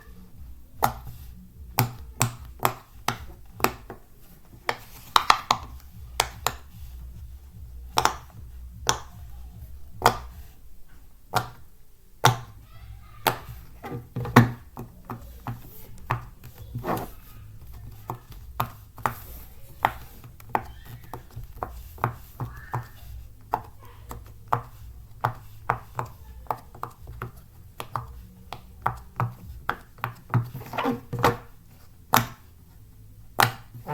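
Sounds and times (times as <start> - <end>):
fidget toy bubbles popping: 0.8 - 10.5.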